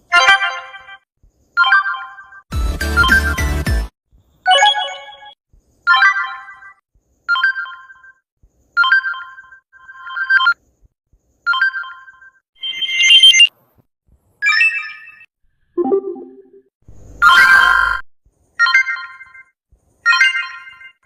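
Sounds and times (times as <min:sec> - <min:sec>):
phone notification tones: 0:04.5 - 0:05.3, 0:15.8 - 0:16.6.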